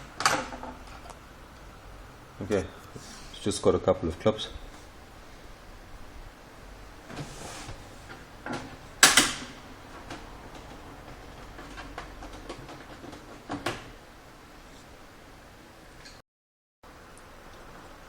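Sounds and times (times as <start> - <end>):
loud plastic snap: 9.0 - 9.6.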